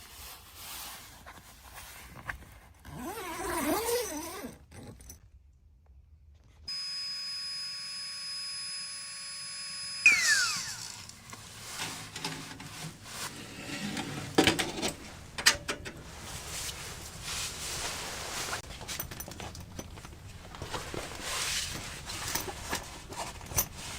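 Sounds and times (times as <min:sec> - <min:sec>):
power tool motor whining: 0:06.7 - 0:11.4
knocks and scraping: 0:11.0 - 0:23.9.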